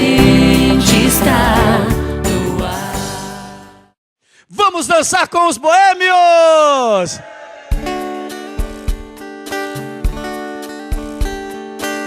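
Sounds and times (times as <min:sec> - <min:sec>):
acoustic guitar strumming: 0:07.8 - 0:12.0.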